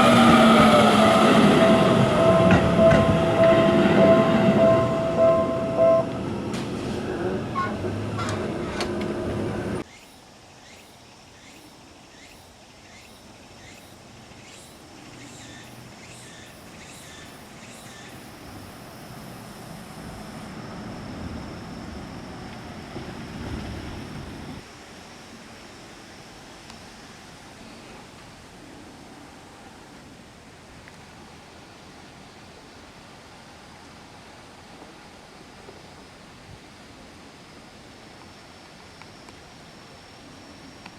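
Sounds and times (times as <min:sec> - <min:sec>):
steady tone: 0:00.0 - 0:06.8
train passing: 0:00.0 - 0:09.8, 0:15.2 - 0:24.7
faint outdoor hiss: 0:00.0 - 0:40.9.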